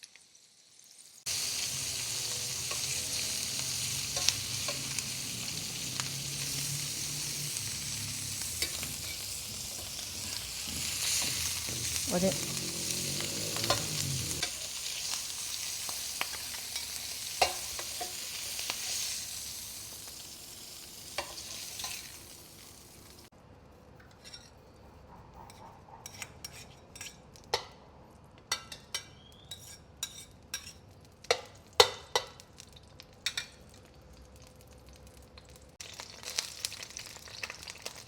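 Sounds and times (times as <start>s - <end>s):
food sizzling in oil: 0.0s - 23.3s, 28.5s - 38.0s
spatula scraping a pan: 1.9s - 19.2s, 21.2s - 22.2s, 24.0s - 27.8s, 28.5s - 31.5s.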